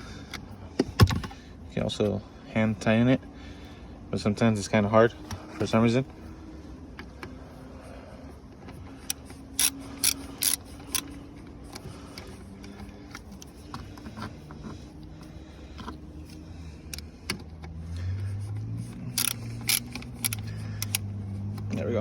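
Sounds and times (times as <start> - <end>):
ratchet clicking: 9.0 - 11.8, 16.8 - 21.7.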